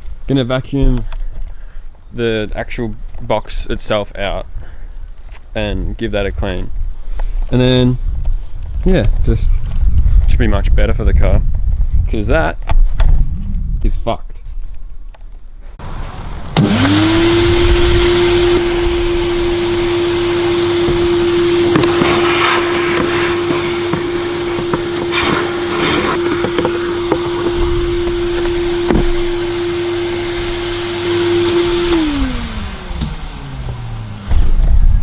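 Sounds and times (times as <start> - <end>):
vacuum cleaner motor whining: 15.8 - 35.0.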